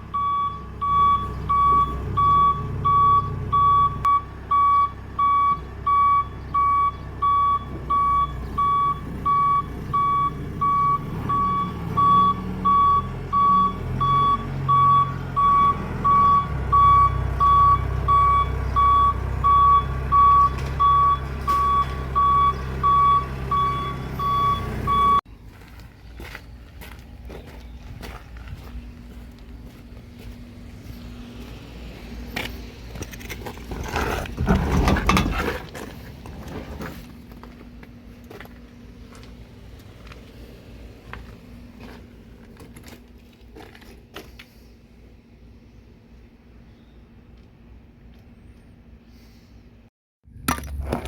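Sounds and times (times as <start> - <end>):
diesel engine running: 0.0 - 46.5
reversing alarm beeping: 0.1 - 25.2.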